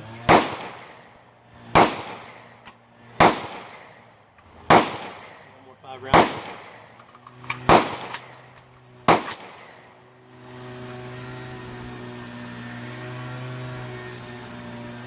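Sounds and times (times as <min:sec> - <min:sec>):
low droning hum: 0:00.0 - 0:15.0
loud rifle shots: 0:00.2 - 0:09.9
faint gunshot cracks: 0:00.3 - 0:01.0, 0:01.8 - 0:02.5, 0:03.2 - 0:04.0, 0:04.7 - 0:05.4, 0:06.1 - 0:06.9, 0:07.6 - 0:08.3, 0:09.1 - 0:09.8.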